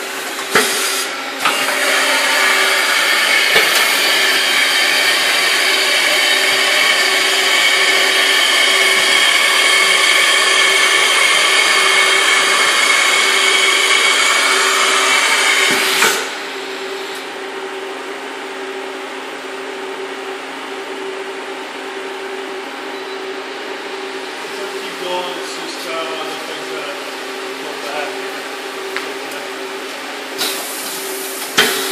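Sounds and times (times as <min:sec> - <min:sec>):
machine high whine: 0:00.0 - 0:31.9
steady machine hum: 0:00.0 - 0:31.9.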